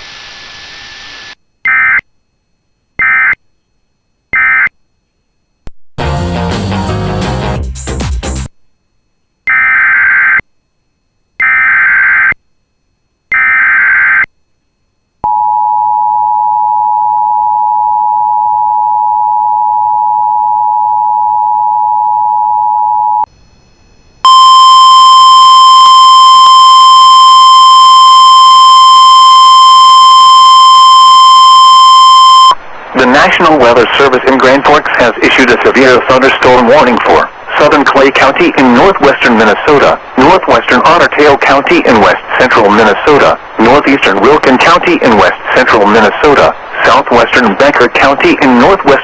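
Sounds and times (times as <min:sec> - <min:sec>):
single-pitch warning tone: 0:24.2 - 0:32.6
two-tone attention signal: 0:24.2 - 0:32.6.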